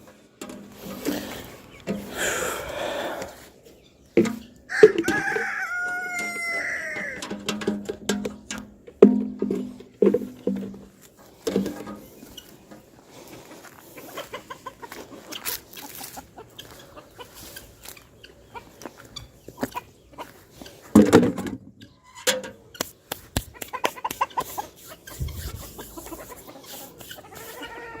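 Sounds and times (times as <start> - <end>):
chickens clucking: 0.0 - 28.0
chicken call: 4.7 - 7.2, 25.8 - 28.0
sharp clicks and taps: 22.4 - 24.6.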